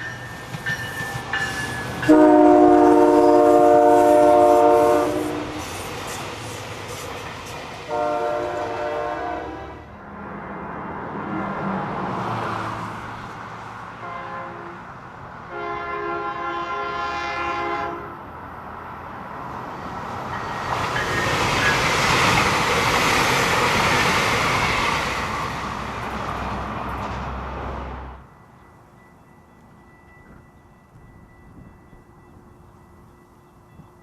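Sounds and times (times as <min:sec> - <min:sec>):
train passing with rumble: 0:00.0 - 0:34.0
train horn blasts: 0:02.0 - 0:05.8, 0:07.9 - 0:10.0, 0:14.0 - 0:18.2.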